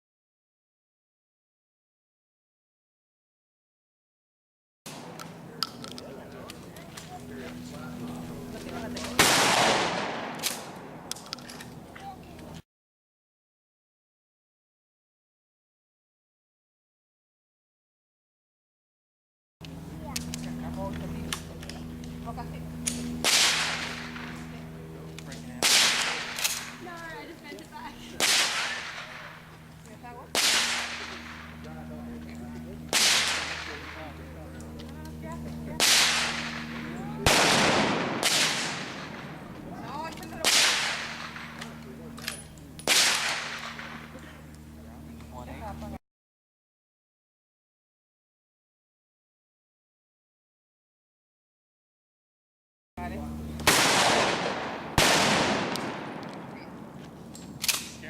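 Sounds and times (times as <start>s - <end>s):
gunshots with echo: 9.2s - 11.0s, 25.6s - 26.7s, 28.2s - 29.4s, 32.9s - 34.0s, 35.8s - 39.4s, 53.7s - 56.6s.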